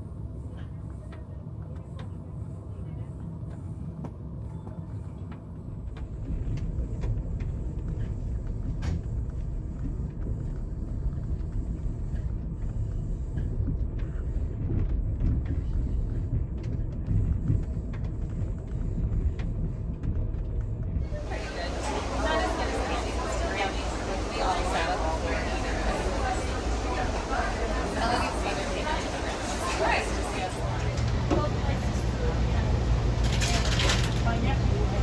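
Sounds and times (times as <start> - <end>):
passenger train rumbling: 21.0 - 35.0.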